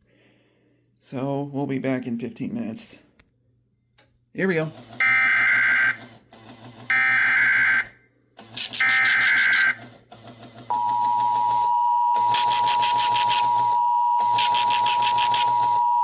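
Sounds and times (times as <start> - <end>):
fast pulsing beep: 8.7 - 9.8, 10.7 - 16.0
steady attention tone: 10.7 - 16.0
warbling data tone bursts: 12.2 - 16.0.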